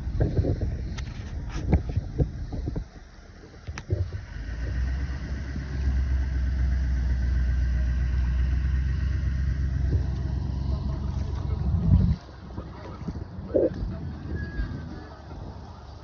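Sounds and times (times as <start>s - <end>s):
engine droning: 0.0s - 16.0s.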